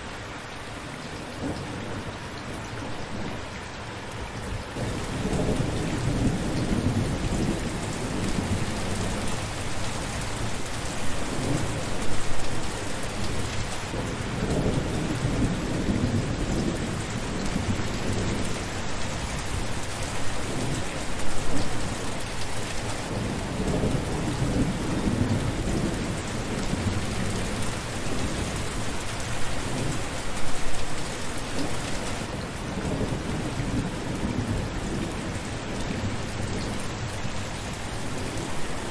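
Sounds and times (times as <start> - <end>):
steady rain falling: 0.0 - 38.9
thunder rumbling: 4.8 - 18.6.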